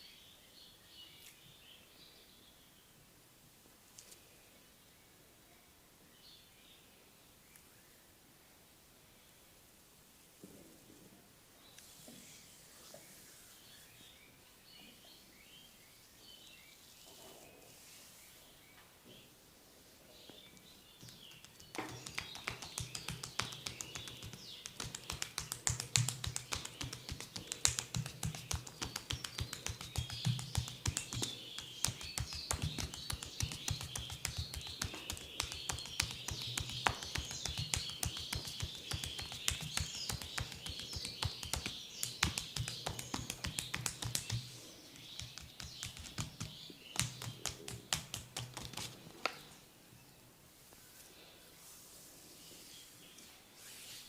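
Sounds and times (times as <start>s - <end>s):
rapid tapping massage strokes: 21.0s - 49.2s.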